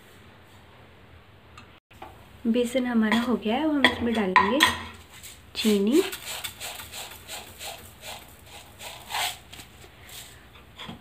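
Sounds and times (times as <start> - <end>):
spoon clinking against cooking pan: 3.1 - 4.9.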